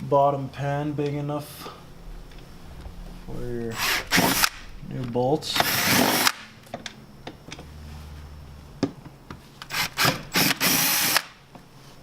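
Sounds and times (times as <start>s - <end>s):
power drill drilling through plastic: 5.6s - 6.4s, 9.7s - 11.4s.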